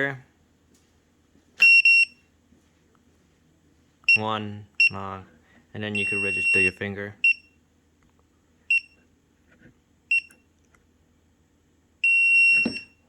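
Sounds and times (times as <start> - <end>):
door lock beeping: 12.0 - 13.0.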